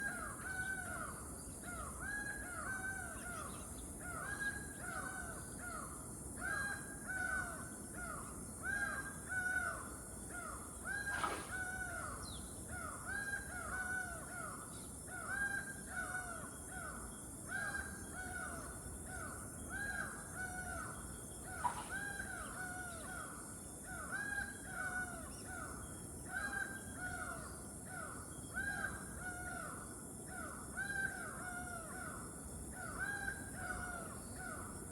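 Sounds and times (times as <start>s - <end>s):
steady high-pitched hiss: 0.0s - 34.9s
birds calling in chorus: 10.8s - 23.4s.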